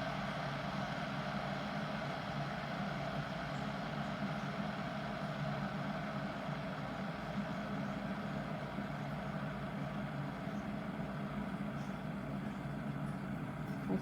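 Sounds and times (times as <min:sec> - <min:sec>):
electric kettle heating water: 0:00.0 - 0:14.0.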